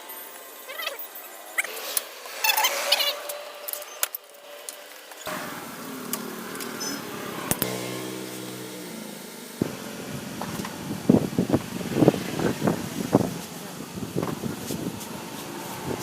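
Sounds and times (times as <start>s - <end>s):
steady hum: 5.3s - 14.2s.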